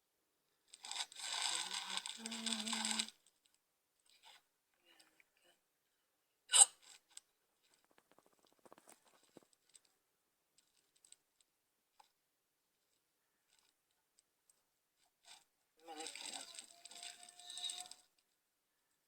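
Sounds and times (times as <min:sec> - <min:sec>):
soft rustling: 0:06.9 - 0:10.0.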